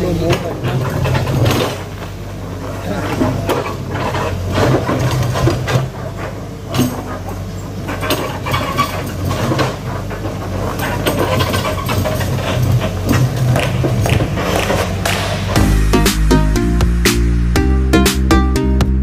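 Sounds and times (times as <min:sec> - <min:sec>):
backhoe engine running: 0:00.0 - 0:19.0
knocks and clanks: 0:00.1 - 0:02.2, 0:02.9 - 0:15.7.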